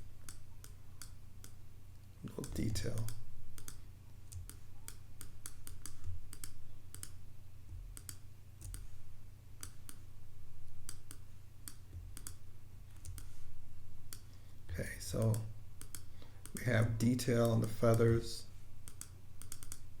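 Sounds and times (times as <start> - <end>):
steady low hum: 0.0 - 20.0
computer mouse clicking: 0.2 - 1.6, 2.2 - 7.2, 7.9 - 8.9, 9.6 - 10.0, 10.9 - 13.4, 14.1 - 14.3, 15.2 - 18.1, 18.8 - 19.9.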